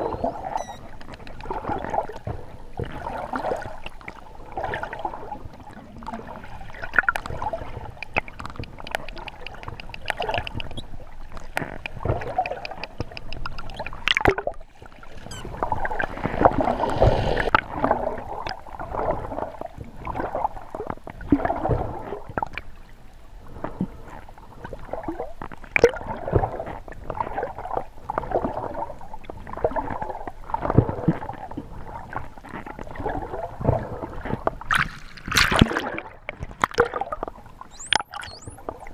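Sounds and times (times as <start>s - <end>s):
dolphin clicks and calls: 0.0s - 1.6s, 7.0s - 14.5s, 15.2s - 15.6s, 37.6s - 38.8s
bubbling underwater water noise: 0.0s - 22.7s, 24.6s - 38.9s.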